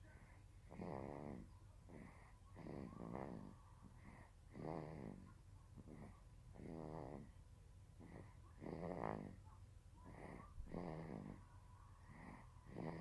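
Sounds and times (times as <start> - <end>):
soft breath sound: 0.0 - 6.3.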